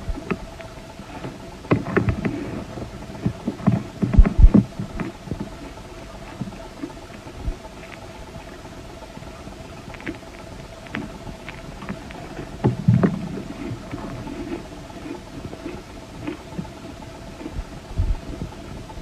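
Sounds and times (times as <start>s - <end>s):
ice crunching while chewed: 9.8s - 18.4s.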